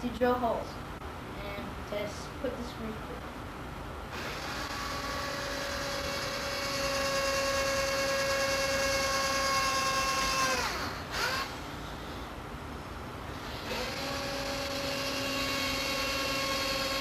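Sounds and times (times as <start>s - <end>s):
electric drill drilling wood: 4.1s - 11.7s, 13.4s - 17.0s.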